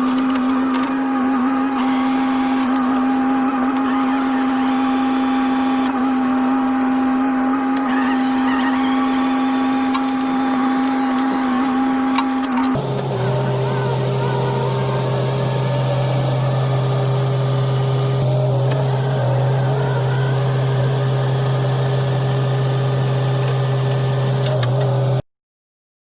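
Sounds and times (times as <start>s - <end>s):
excavator machine hum and whine: 0.0s - 25.2s.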